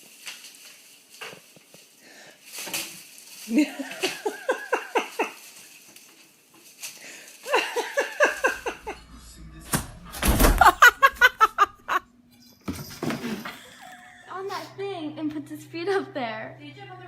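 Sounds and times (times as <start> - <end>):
person laughing: 3.6 - 5.4, 7.5 - 9.1, 10.4 - 12.0, 13.2 - 15.0.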